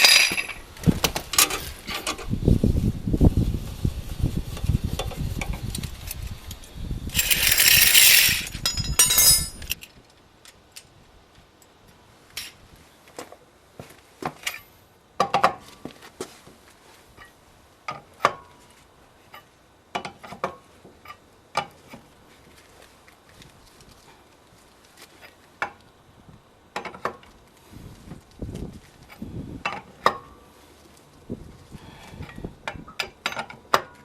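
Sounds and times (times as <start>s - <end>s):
hand tools clinking: 0.0s - 0.6s, 7.2s - 9.9s
low rumble and handling noise: 0.0s - 14.8s, 15.6s - 34.0s.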